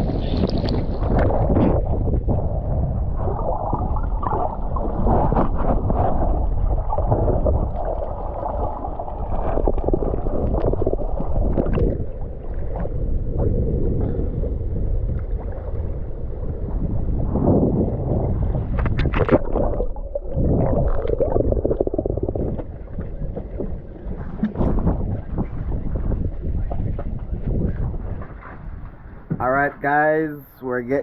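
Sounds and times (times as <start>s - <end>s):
muffled water gurgling: 0.0s - 29.9s.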